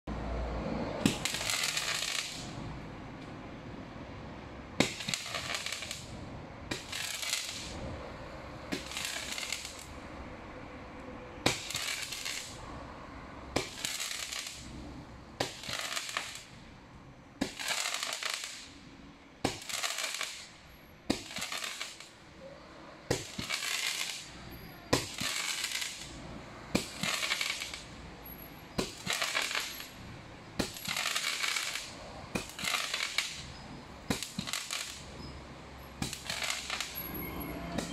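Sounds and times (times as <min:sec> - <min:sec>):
roman candle pops and crackling: 0:34.1 - 0:35.0, 0:36.0 - 0:37.0.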